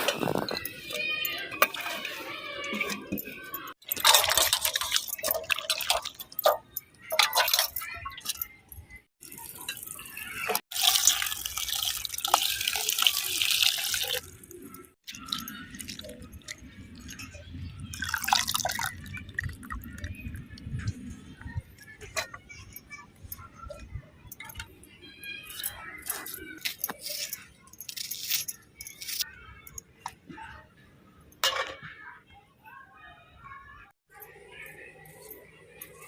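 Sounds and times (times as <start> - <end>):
water splashing and pouring: 0.0 - 8.4, 9.2 - 20.6
clinks and knocks: 0.0 - 9.0, 31.3 - 32.0.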